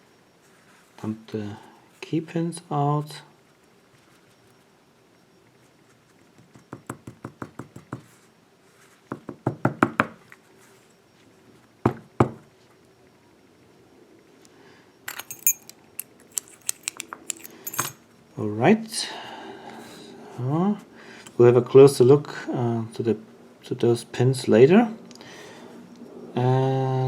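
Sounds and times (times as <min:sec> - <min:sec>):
metallic clinks of lock parts: 0:15.1 - 0:18.0.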